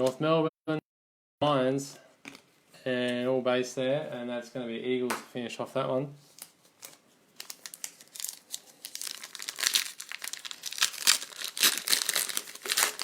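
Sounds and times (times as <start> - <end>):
foil wrapper crinkling and tearing: 6.4 - 13.0.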